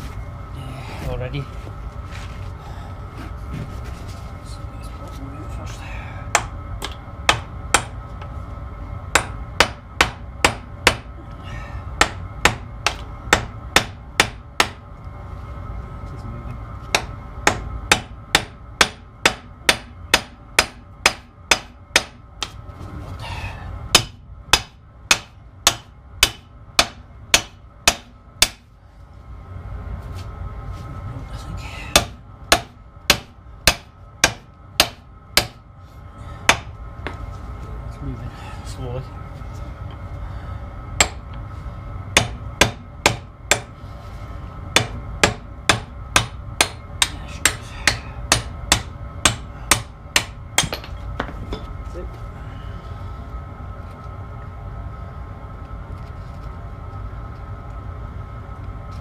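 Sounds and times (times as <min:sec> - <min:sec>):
hammer striking steel: 0:06.3 - 0:08.0, 0:09.1 - 0:11.1, 0:12.0 - 0:14.8, 0:16.9 - 0:22.5, 0:24.0 - 0:28.6, 0:31.9 - 0:35.6, 0:36.5 - 0:36.7, 0:41.0 - 0:41.2, 0:42.2 - 0:43.7, 0:44.8 - 0:51.3.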